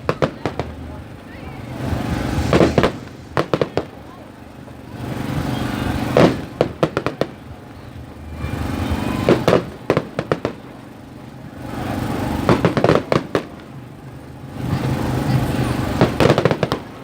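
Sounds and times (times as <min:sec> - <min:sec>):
firework rushing noise: 0:00.0 - 0:07.4
fireworks cracks and bangs: 0:00.0 - 0:07.5, 0:12.4 - 0:13.7, 0:16.0 - 0:17.0.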